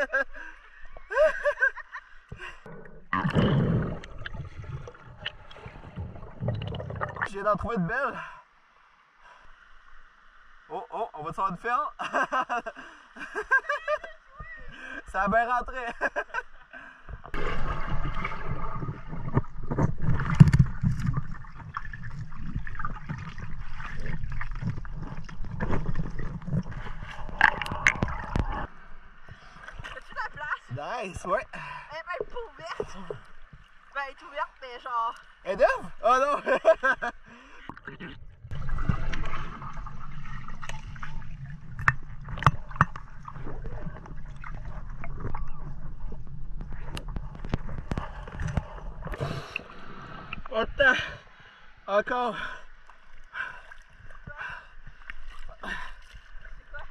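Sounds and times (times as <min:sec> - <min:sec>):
underwater river gurgling: 0:00.0 - 0:11.6, 0:16.6 - 0:30.3, 0:36.9 - 0:56.9.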